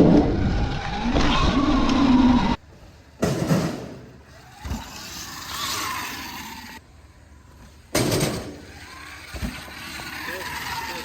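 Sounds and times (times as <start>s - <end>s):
tyre and riding noise: 0.0s - 11.0s
electric motorbike motor whine: 4.2s - 6.8s, 8.6s - 11.0s.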